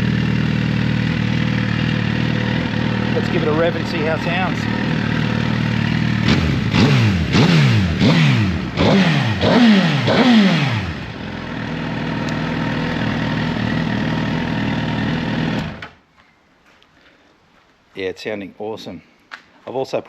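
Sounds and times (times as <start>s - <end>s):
motorcycle engine idling: 0.0s - 15.8s
motorcycle engine revving: 0.0s - 16.0s.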